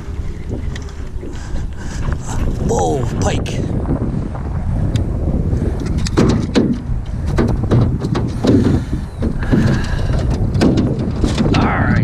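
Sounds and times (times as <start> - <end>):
wind buffeting microphone: 0.0 - 12.0
knocks and clatter in boat: 5.8 - 12.0.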